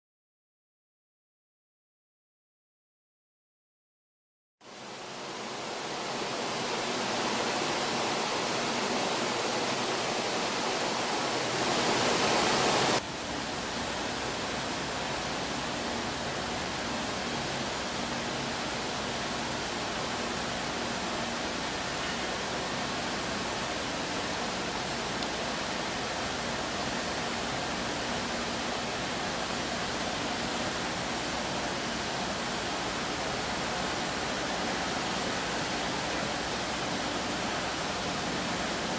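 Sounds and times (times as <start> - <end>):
even rushing noise: 5.0 - 13.0.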